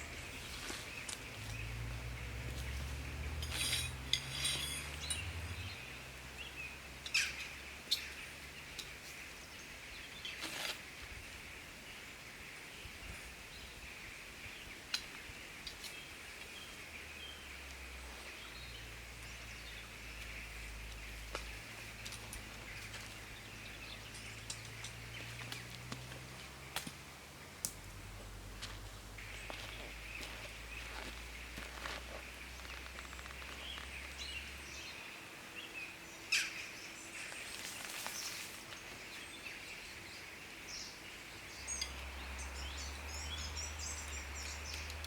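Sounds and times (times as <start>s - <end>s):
campfire crackling: 24.3s - 29.6s.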